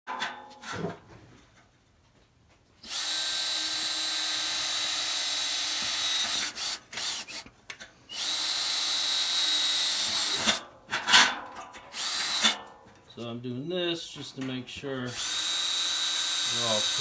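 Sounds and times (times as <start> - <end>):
power drill running: 2.8 - 7.4, 8.1 - 10.6, 12.0 - 12.6, 15.1 - 17.0.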